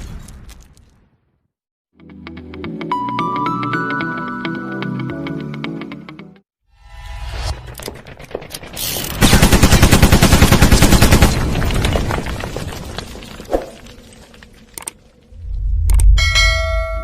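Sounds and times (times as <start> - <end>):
rapid loud sharp bangs: 9.1 - 11.6
scattered clicks: 14.8 - 15.0, 15.7 - 16.2.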